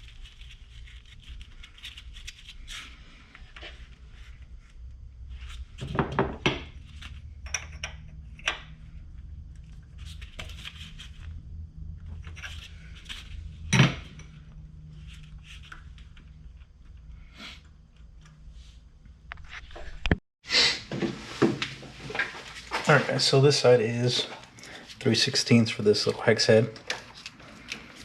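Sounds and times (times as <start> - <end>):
steady low hum: 0.0 - 20.1.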